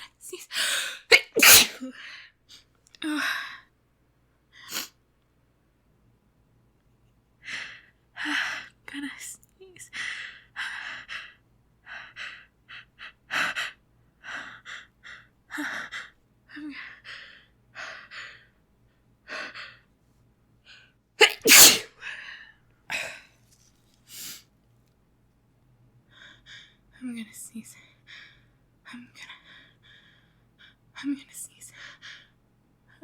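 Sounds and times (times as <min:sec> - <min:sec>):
woman sneezing: 0:01.1 - 0:01.9, 0:21.2 - 0:21.9.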